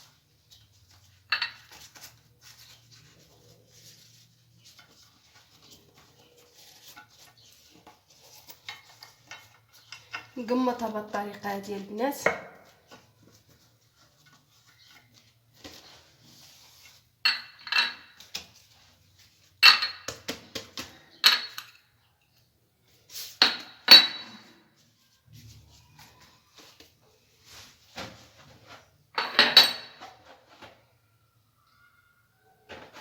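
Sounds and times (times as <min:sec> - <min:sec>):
quiet handling of utensils: 0:00.0 - 0:11.4
metal utensils and dishes clinking: 0:00.5 - 0:02.8, 0:04.1 - 0:11.4, 0:16.9 - 0:18.5, 0:29.2 - 0:30.6.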